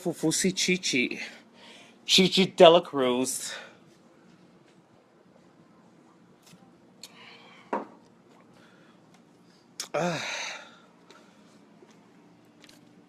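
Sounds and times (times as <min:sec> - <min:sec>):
person sighing: 0:09.8 - 0:10.8.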